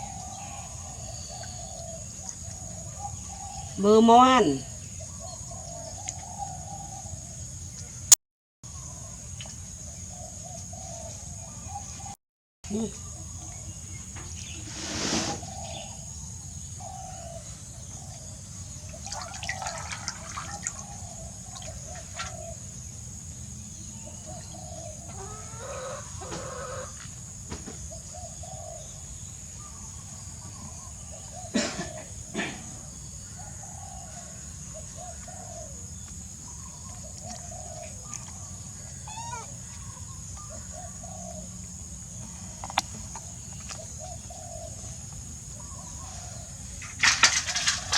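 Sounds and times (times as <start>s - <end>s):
chickens clucking: 24.7s - 27.8s.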